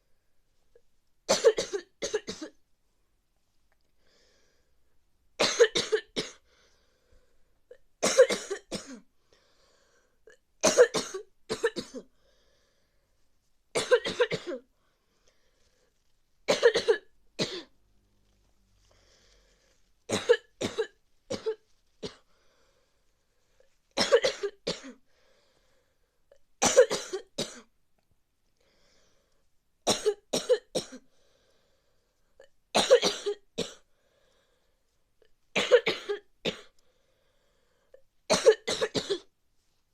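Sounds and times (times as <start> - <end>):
person coughing: 1.3 - 2.6, 5.4 - 6.4, 8.0 - 9.0, 10.6 - 12.1, 13.8 - 14.7, 16.5 - 17.7, 20.1 - 22.2, 24.0 - 25.0, 26.6 - 27.7, 29.9 - 31.0, 32.8 - 33.8, 35.6 - 36.7, 38.3 - 39.3.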